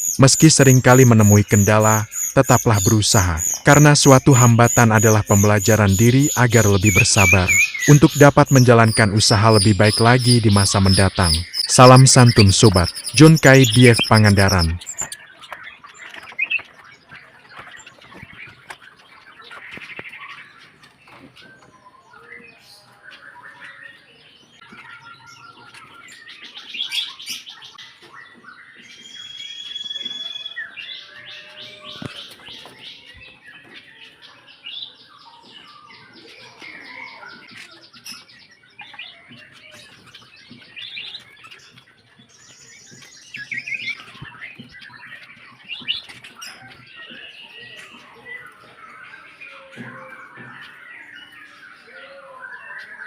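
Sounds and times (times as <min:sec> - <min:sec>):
small birds chirping and trilling: 0:00.0 - 0:53.0.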